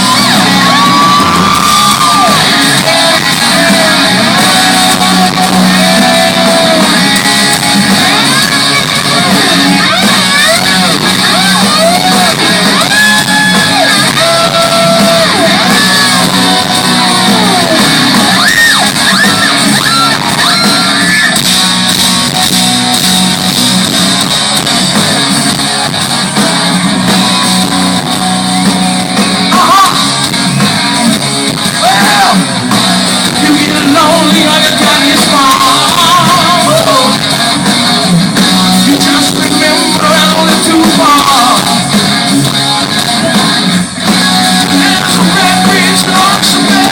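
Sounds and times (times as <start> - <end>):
live rock band: 0.0 - 46.9
man singing: 0.8 - 7.6, 29.5 - 30.1, 33.2 - 37.4, 38.6 - 42.0, 44.4 - 46.9.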